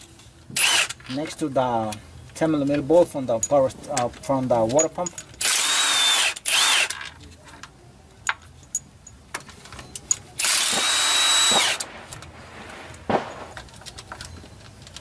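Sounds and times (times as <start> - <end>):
metal clinks of socket and bolt: 3.4 - 5.4, 6.9 - 10.3
impact gun spinning bolt: 10.4 - 12.3.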